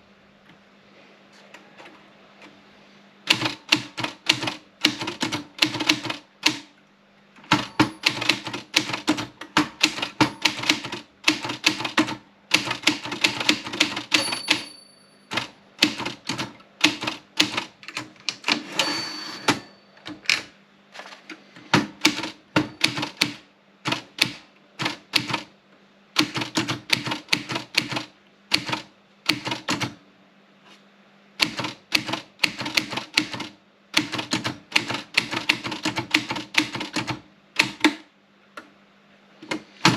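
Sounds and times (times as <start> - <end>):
typewriter carriage return: 7.4 - 25.5
typewriter end-of-line bell: 7.5 - 8.3, 14.1 - 15.5, 18.6 - 20.0
typewriter keys clacking: 7.5 - 14.7, 15.3 - 18.6, 21.8 - 25.4, 26.2 - 29.9, 31.4 - 37.9.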